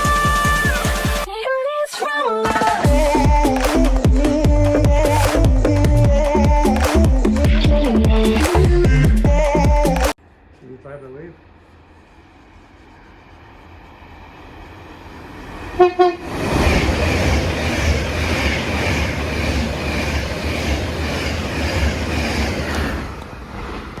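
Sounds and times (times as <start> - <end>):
train rushing past: 10.3 - 24.0
train horn blasts: 15.8 - 16.3.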